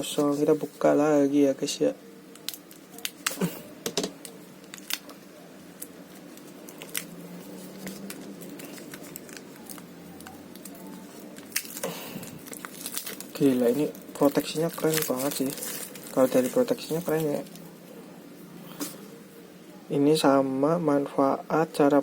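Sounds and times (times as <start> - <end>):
plastic packaging handled: 2.3 - 17.7.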